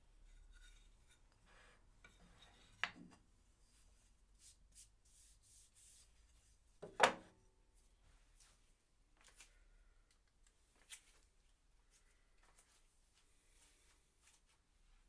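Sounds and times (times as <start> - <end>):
faint rubbing and handling: 0.1 - 6.7.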